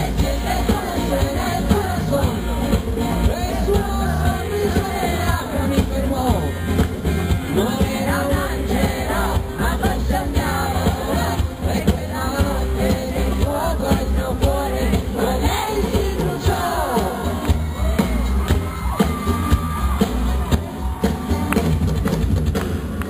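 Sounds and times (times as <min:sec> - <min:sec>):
man singing: 0:00.0 - 0:17.5
live pop band: 0:00.0 - 0:23.0.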